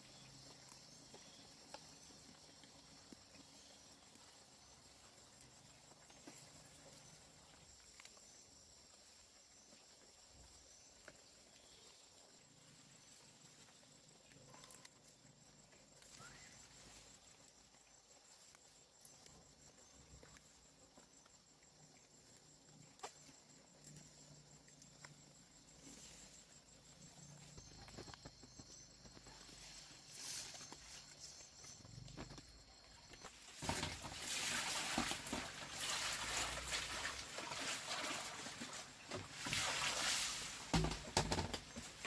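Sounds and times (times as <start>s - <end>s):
high-pitched insect trill: 16.0s - 42.0s.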